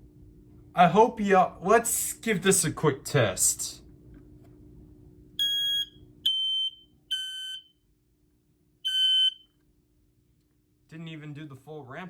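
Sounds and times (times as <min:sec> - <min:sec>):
smoke alarm beeps: 0:05.4 - 0:07.8, 0:08.8 - 0:09.6.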